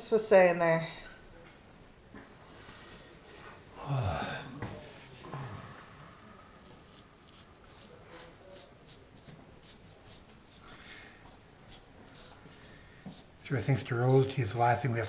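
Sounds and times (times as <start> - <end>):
scratchy rustling: 6.6 - 15.0.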